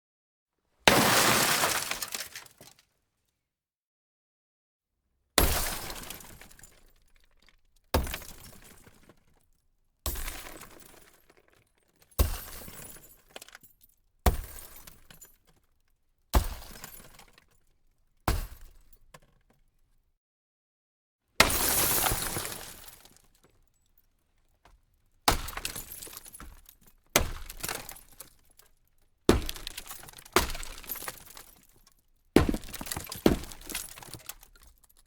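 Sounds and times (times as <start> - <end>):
glass shattering: 21.4 - 23.3, 25.3 - 28.6, 29.3 - 35.0.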